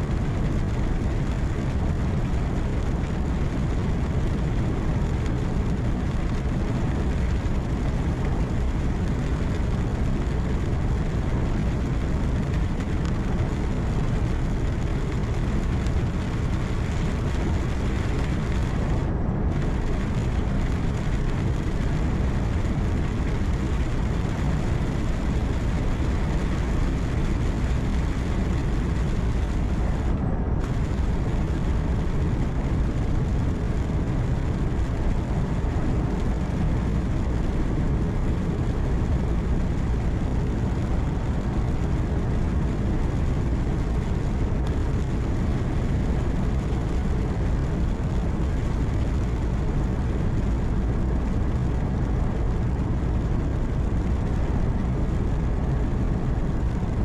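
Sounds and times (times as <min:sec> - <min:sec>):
tyre and road noise: 0:00.0 - 0:57.0
truck engine rumble: 0:05.6 - 0:41.4.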